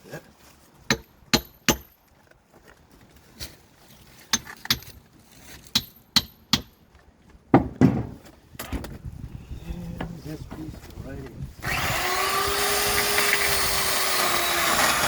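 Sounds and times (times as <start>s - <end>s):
sharp knocks: 7.5s - 8.9s.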